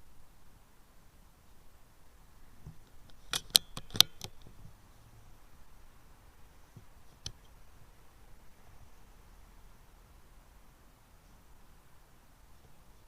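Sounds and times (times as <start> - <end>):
sharp metallic clicks: 3.0 - 4.5.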